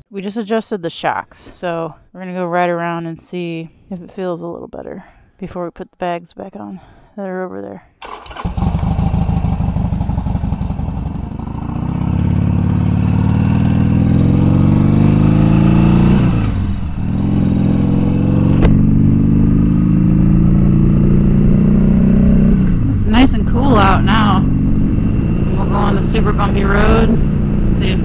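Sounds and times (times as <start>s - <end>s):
motorcycle engine accelerating: 8.0s - 28.0s.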